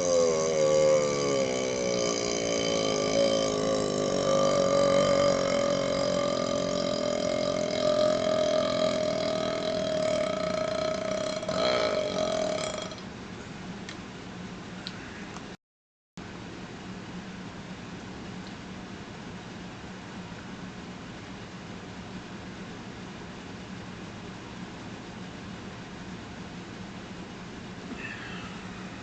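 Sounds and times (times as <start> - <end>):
man burping: 0.0 - 13.0.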